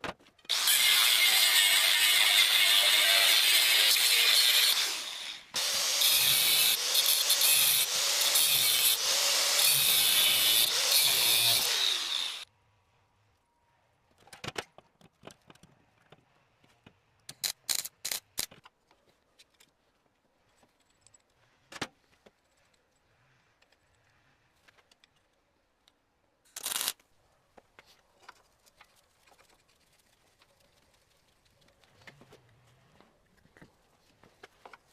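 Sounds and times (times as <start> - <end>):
power-tool machine hissing: 4.4 - 12.5.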